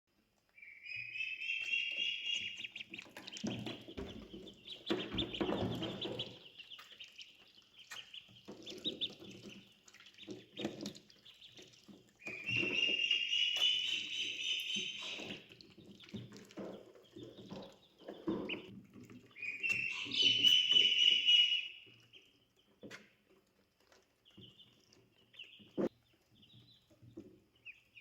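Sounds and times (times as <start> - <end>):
ducklings peeping: 0.5 - 28.0
bills dabbling in water: 1.6 - 22.4.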